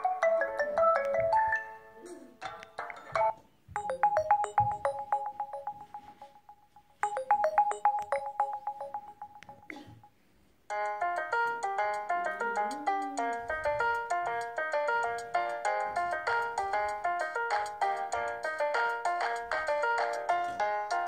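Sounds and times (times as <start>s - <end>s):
electronic phone ringtone: 3.2s - 9.7s
fuller phone ringtone: 3.2s - 9.7s.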